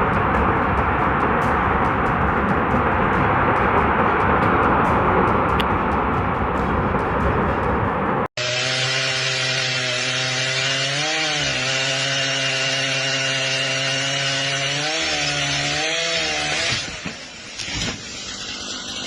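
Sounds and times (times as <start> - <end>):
small engine running: 8.4 - 19.0.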